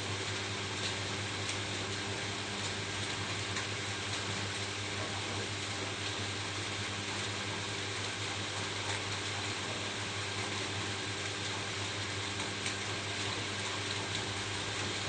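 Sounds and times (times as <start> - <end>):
rain on a roof: 0.0 - 15.0.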